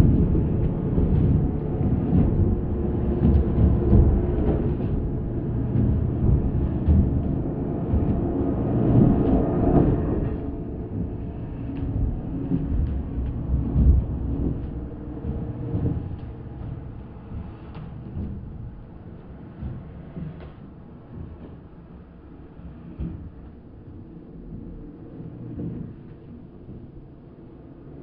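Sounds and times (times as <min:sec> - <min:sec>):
deep steady rumble: 0:00.0 - 0:28.0.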